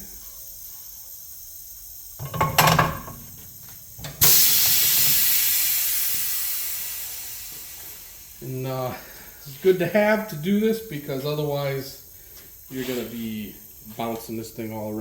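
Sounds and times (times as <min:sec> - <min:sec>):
hot metal hissing: 0:01.6 - 0:15.0
metal clunk: 0:02.2 - 0:04.5.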